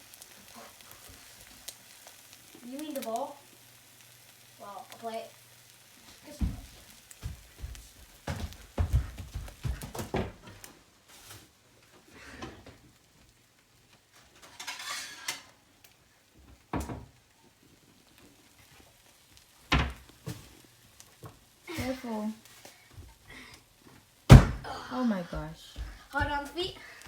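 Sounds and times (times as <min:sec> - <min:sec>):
dishes and cookware clattering: 0:14.2 - 0:15.6.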